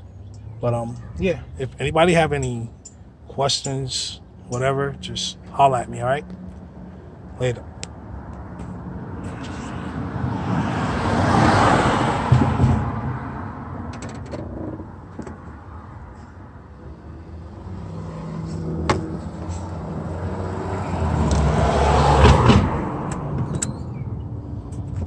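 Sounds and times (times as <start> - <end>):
vehicle passing by rumble: 8.0 - 14.0, 14.6 - 24.7.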